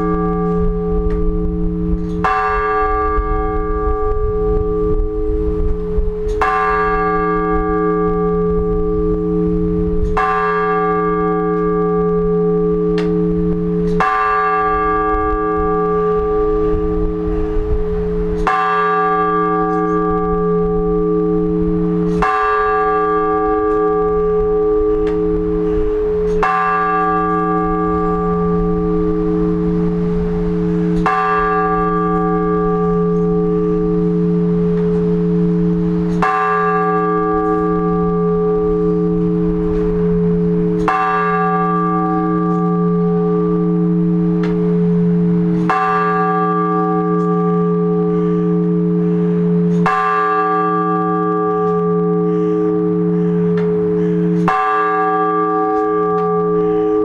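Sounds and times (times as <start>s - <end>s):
church bell tolling: 0.0s - 57.0s.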